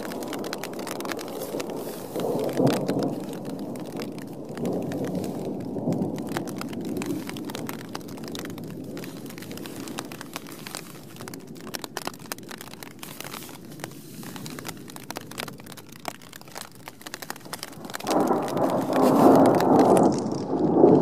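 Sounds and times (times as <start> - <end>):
thunder rolling: 0.0 - 11.8, 17.7 - 21.0
steady rain: 0.0 - 21.0.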